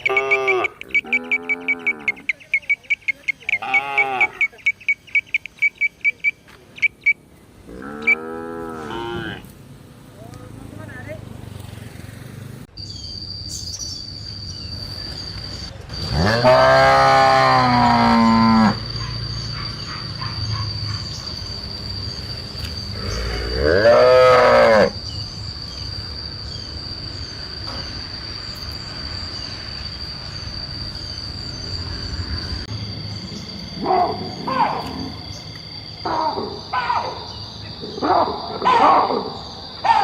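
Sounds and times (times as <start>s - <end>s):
cow mooing: 0.0s - 2.3s, 3.6s - 4.4s, 7.7s - 9.5s, 16.0s - 18.8s, 23.0s - 25.0s.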